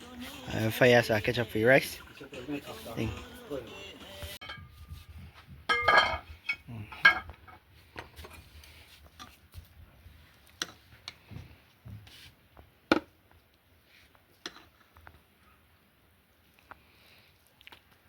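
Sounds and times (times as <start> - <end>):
metal pot clanking: 4.4 - 4.8, 5.7 - 7.4.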